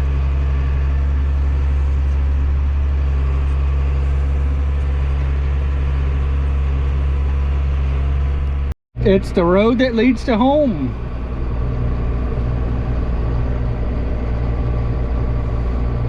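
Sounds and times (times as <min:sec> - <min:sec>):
combine harvester drone: 0:00.0 - 0:16.0.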